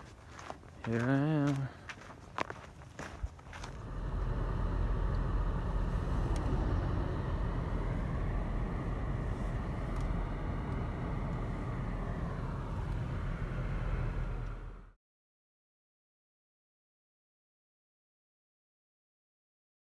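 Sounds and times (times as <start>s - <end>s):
car engine running: 3.6s - 15.0s.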